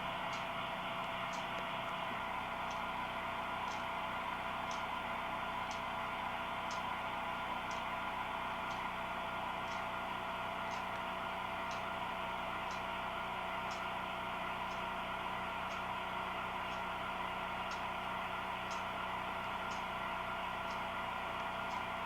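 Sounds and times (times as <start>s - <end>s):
faint ticking: 3.6s - 3.9s, 6.6s - 6.9s, 7.6s - 7.9s, 9.6s - 12.0s, 12.6s - 12.9s, 13.6s - 13.9s, 15.6s - 16.0s, 16.6s - 17.0s, 17.6s - 17.9s, 18.6s - 18.9s, 19.6s - 20.0s.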